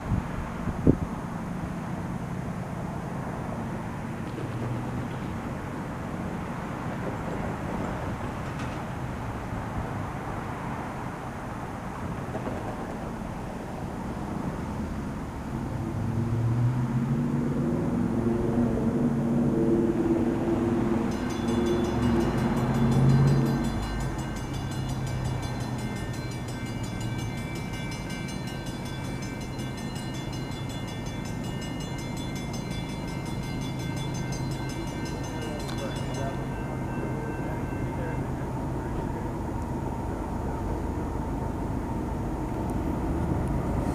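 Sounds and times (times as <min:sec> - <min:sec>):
diesel engine rumble: 0:00.0 - 0:43.9
high-pitched ringing: 0:21.1 - 0:39.4.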